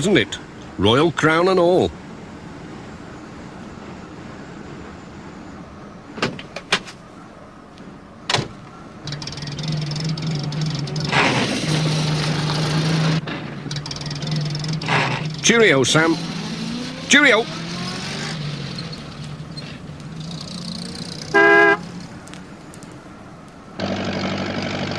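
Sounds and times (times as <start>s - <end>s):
van engine running: 8.7s - 24.9s.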